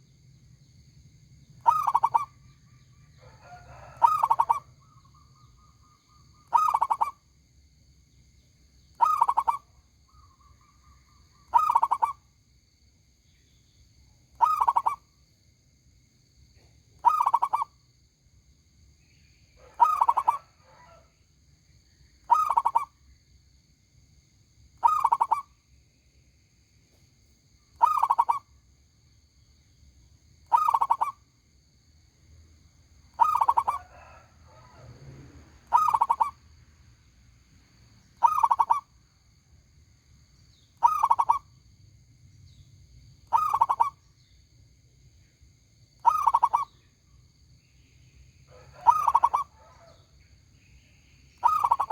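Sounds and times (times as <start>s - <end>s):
dove cooing: 1.6s - 2.4s, 3.2s - 4.7s, 6.5s - 7.1s, 9.0s - 9.6s, 11.5s - 12.1s, 14.4s - 15.0s, 17.0s - 17.6s, 19.6s - 21.1s, 22.3s - 22.9s, 24.8s - 25.4s, 27.8s - 28.4s, 30.5s - 31.2s, 33.2s - 36.4s, 38.2s - 38.8s, 40.8s - 41.4s, 43.3s - 44.0s, 46.0s - 46.7s, 48.5s - 50.0s, 51.4s - 51.9s.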